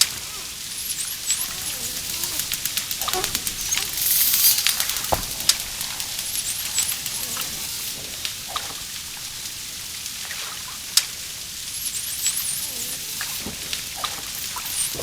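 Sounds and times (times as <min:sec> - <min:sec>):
steady underwater hiss: 0:00.0 - 0:15.0
high dolphin whistles: 0:00.1 - 0:05.5, 0:11.7 - 0:15.0.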